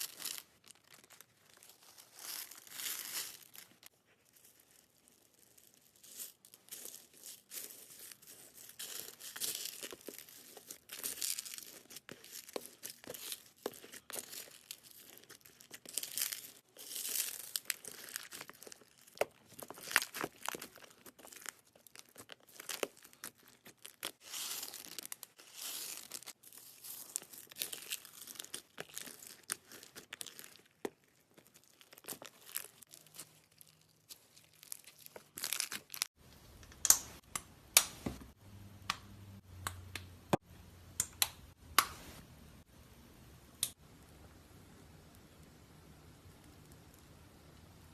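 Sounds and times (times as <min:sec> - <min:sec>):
slime crackling and popping: 0:04.5 - 0:37.9.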